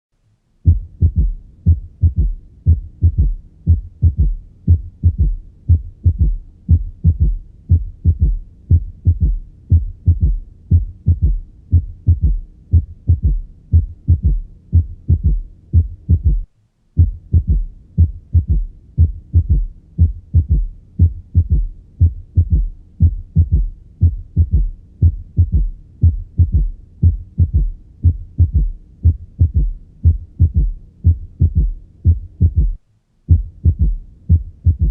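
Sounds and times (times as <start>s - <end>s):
heartbeat low thuds: 0.6s - 34.9s.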